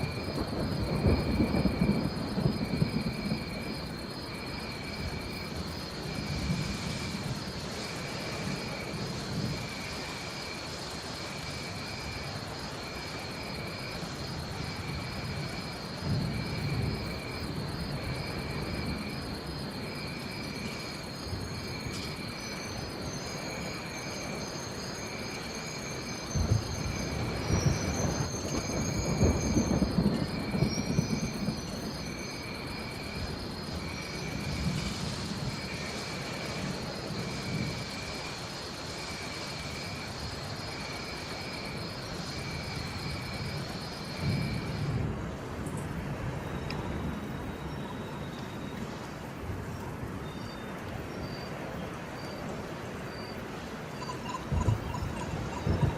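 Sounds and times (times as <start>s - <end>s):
rolling thunder: 0.0s - 23.8s, 25.1s - 38.4s, 39.0s - 50.4s, 54.2s - 55.9s
steady rain: 0.0s - 55.9s
high wavering animal calls: 53.9s - 55.9s.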